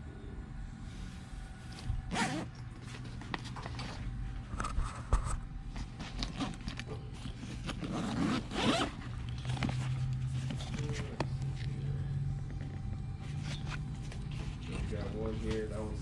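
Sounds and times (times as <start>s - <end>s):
steady low hum: 0.0s - 16.0s
bag handling clicks and rustles: 1.7s - 4.1s, 5.6s - 11.7s
bag zipper being pulled: 2.1s - 2.5s, 7.6s - 9.6s.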